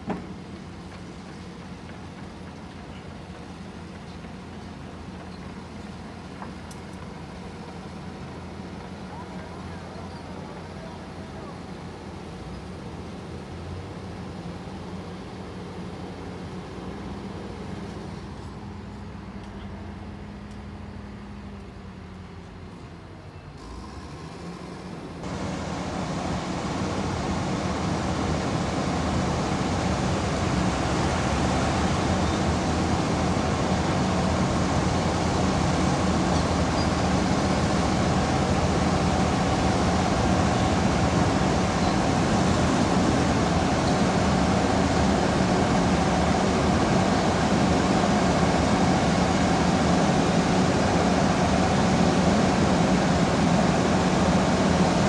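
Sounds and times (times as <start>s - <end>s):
heavy diesel engine running: 24.8s - 55.0s.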